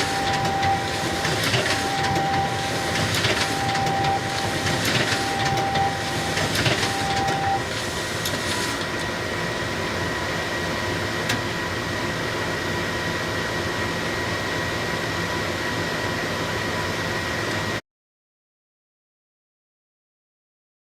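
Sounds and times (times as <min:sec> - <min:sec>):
photocopier whirring: 0:00.0 - 0:09.4
high whine: 0:00.0 - 0:17.8.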